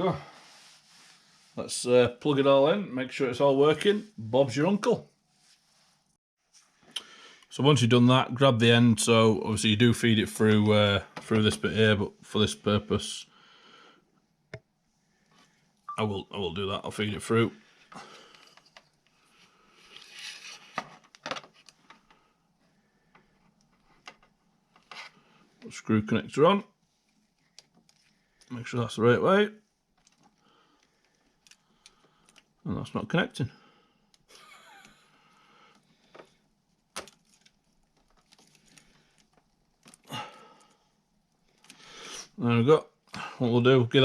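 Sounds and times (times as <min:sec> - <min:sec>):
cable rustling: 0:17.7 - 0:25.8, 0:26.7 - 0:28.7, 0:29.6 - 0:32.7, 0:34.0 - 0:42.1.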